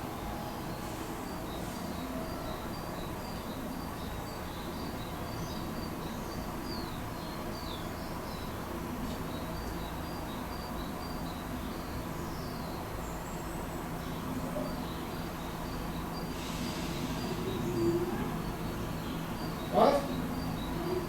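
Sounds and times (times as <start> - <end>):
birds chirping: 9.3 - 21.0.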